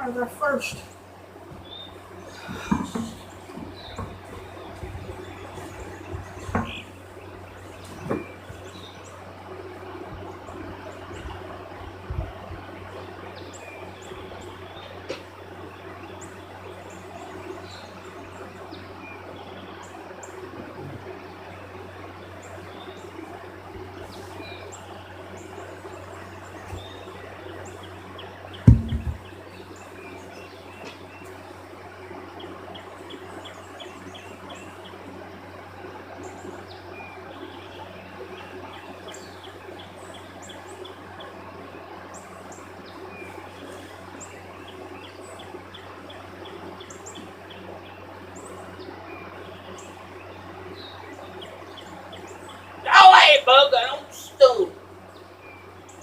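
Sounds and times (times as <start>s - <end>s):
small birds chirping and trilling: 0.0s - 56.0s
steady low hum: 0.0s - 56.0s
sharp low thump: 28.7s - 29.3s.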